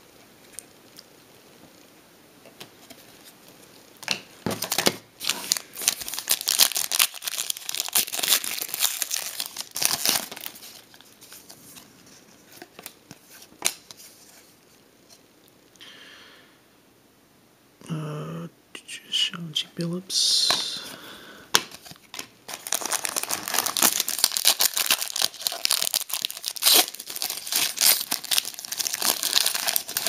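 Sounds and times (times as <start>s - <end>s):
wrapper tearing and crinkling: 4.6s - 11.5s, 21.7s - 30.0s.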